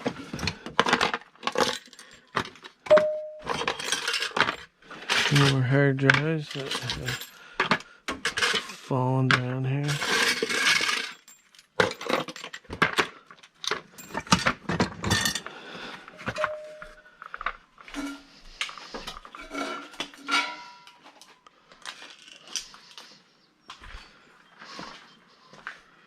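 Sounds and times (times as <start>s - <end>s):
scrap metal clanking: 9.8s - 11.3s, 17.9s - 21.2s.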